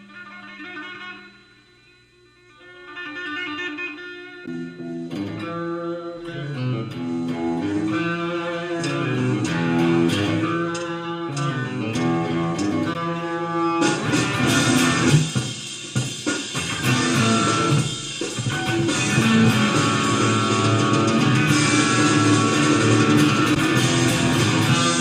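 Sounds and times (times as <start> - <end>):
electric guitar: 0.0 - 25.0
bass guitar: 4.5 - 25.0
drums and cymbals crashing: 13.8 - 25.0.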